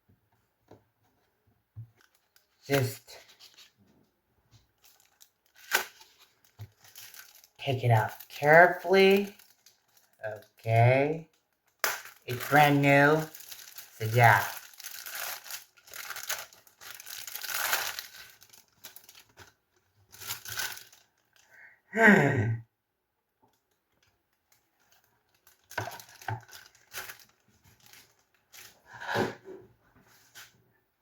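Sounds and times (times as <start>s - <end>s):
plastic packaging crinkling and tearing: 1.9s - 3.8s, 4.7s - 21.5s, 23.5s - 28.9s.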